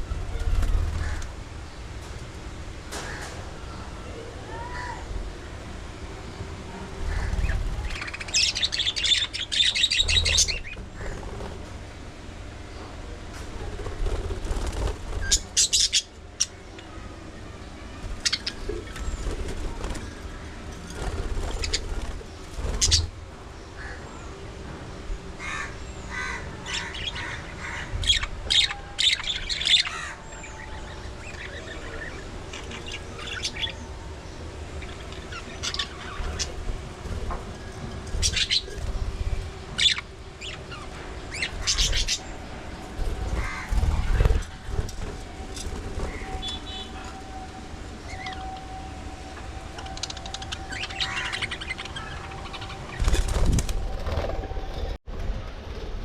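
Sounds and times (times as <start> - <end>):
wings flapping: 9.9 - 11.8, 13.4 - 15.9, 18.2 - 23.1, 42.9 - 47.0, 52.6 - 55.0
budgerigars chirping: 38.2 - 38.8, 39.8 - 42.3.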